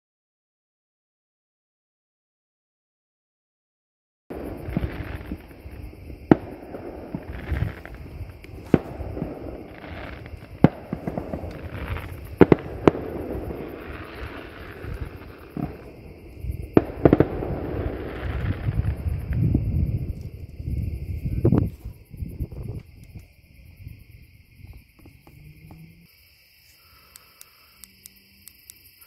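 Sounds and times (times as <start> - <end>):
distant fireworks bangs: 4.3 - 23.2
steady low rumble: 4.3 - 26.1.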